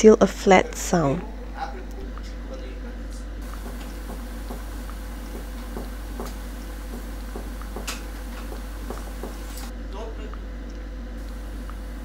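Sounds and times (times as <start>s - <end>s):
low electrical hum: 0.0s - 12.0s
soft chest percussion taps: 3.4s - 9.6s.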